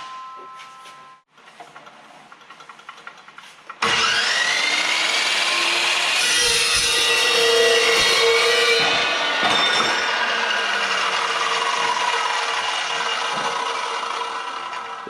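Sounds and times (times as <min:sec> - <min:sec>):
power saw cutting steel: 0:03.7 - 0:15.0.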